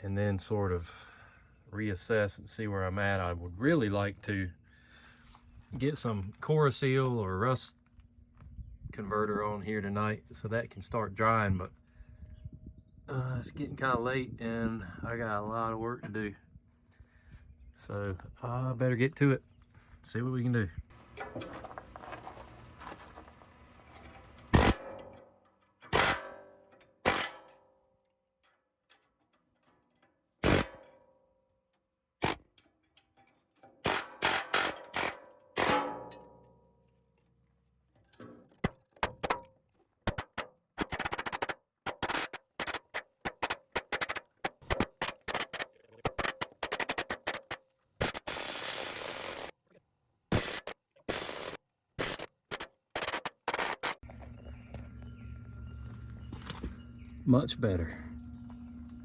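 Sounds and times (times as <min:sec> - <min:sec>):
needle scaler hammering steel: 0:24.5 - 0:25.1, 0:25.9 - 0:27.5, 0:30.4 - 0:30.8, 0:32.2 - 0:32.4, 0:33.8 - 0:36.4, 0:38.6 - 0:39.4, 0:40.1 - 0:49.5, 0:50.3 - 0:54.0
ringing metal clangs: 0:34.8 - 0:36.8.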